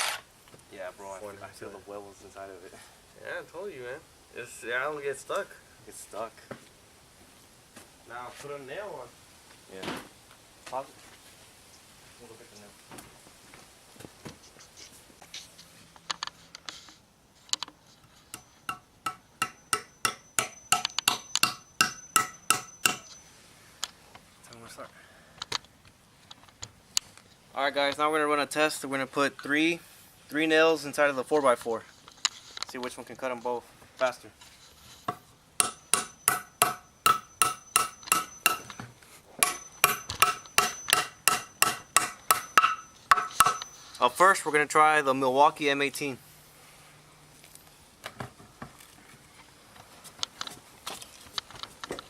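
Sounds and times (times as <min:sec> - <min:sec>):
hammer driving nails into wood: 0:18.4 - 0:23.2, 0:35.6 - 0:38.8, 0:39.4 - 0:43.7.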